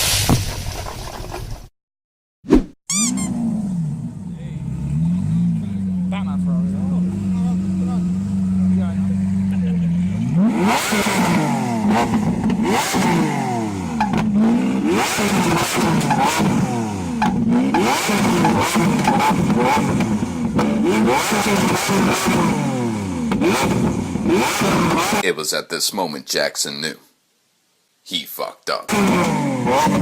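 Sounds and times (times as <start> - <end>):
loud engine revving: 3.0 - 25.2, 28.9 - 30.0
exhaust crackles and pops: 11.0 - 13.0, 14.0 - 16.6, 17.2 - 22.6, 23.3 - 25.2.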